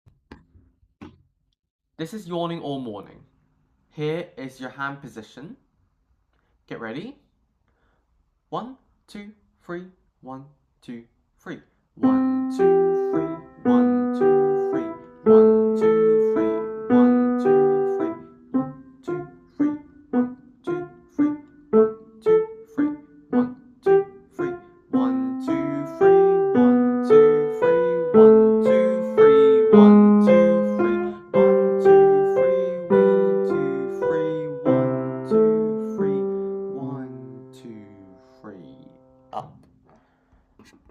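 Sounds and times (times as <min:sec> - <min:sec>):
piano piece: 0:12.0 - 0:39.4.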